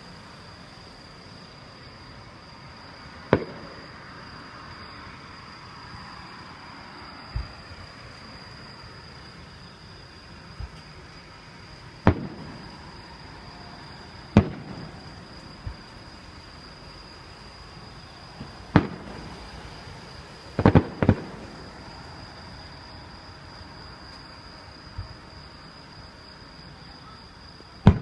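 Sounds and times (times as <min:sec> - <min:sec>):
high insect trill: 0:00.0 - 0:28.0
fireworks bangs with echo: 0:03.3 - 0:03.9, 0:12.0 - 0:13.0, 0:14.3 - 0:15.9, 0:18.3 - 0:19.6, 0:20.5 - 0:21.9, 0:27.8 - 0:28.0.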